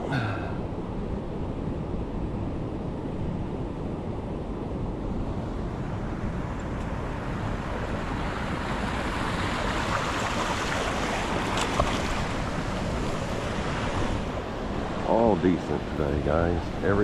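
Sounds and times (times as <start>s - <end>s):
water rushing over rapids: 5.8s - 17.0s.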